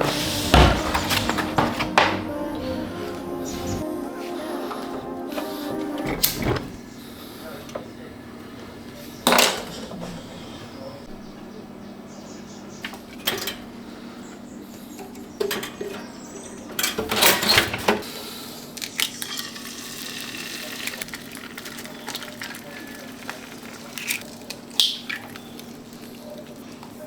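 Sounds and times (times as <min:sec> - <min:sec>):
pans and utensils clattering: 0:00.0 - 0:02.3, 0:16.8 - 0:18.2
low hum: 0:00.0 - 0:06.9.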